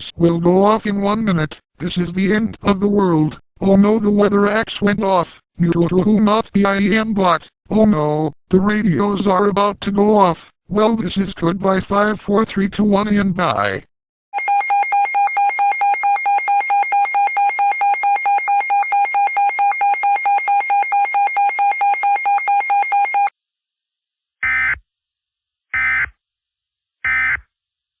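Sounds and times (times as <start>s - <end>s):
weather radio alert beeping: 14.4s - 23.3s.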